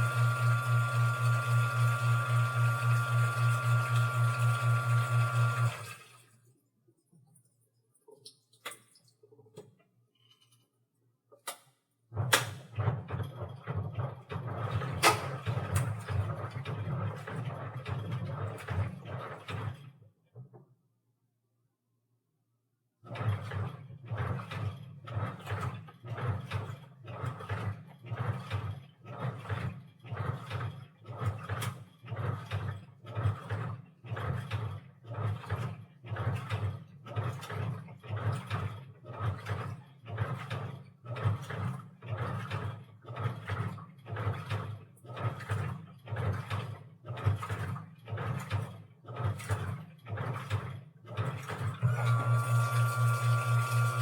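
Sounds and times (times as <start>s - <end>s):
washing machine drum sloshing: 32.2s - 51.8s.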